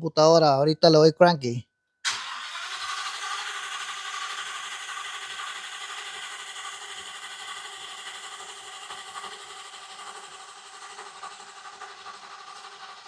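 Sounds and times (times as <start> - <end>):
engine starter cranking: 2.1 - 8.4.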